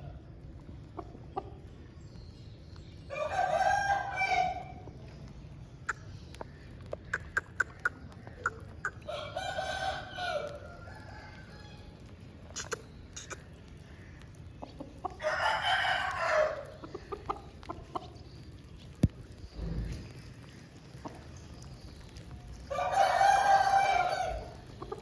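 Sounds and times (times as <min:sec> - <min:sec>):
rooster crowing: 0:15.2 - 0:16.6, 0:22.7 - 0:24.6.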